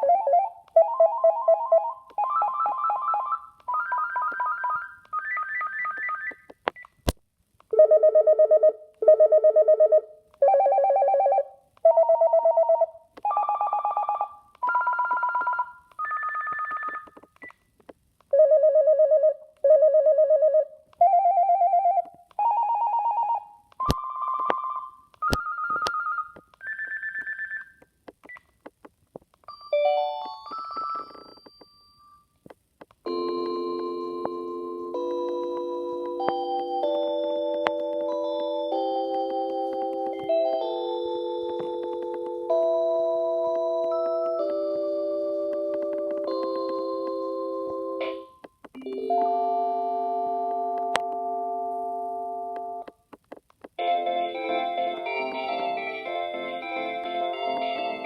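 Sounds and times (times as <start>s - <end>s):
electronic phone ringtone: 0.0s - 6.4s, 7.8s - 17.2s, 18.4s - 27.8s, 29.5s - 32.3s, 33.1s - 52.9s
sharp clicks: 52.6s - 53.8s.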